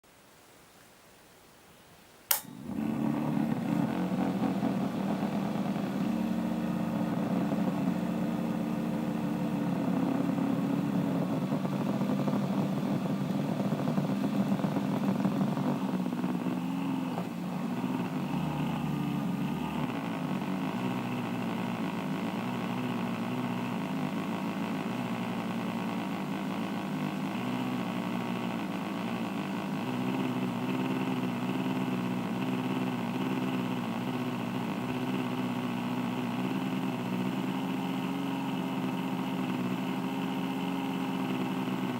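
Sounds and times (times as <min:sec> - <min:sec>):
sharp click: 0:02.3 - 0:02.6
fan rattling and grinding: 0:02.3 - 0:41.9.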